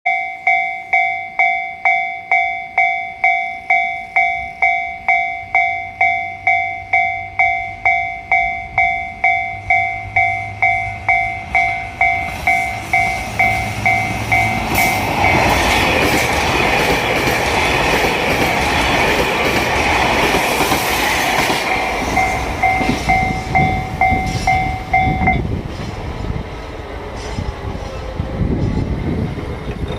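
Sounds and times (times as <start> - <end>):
level crossing bell dinging: 0.1 - 15.6, 21.7 - 25.4
train rushing past: 3.6 - 29.9.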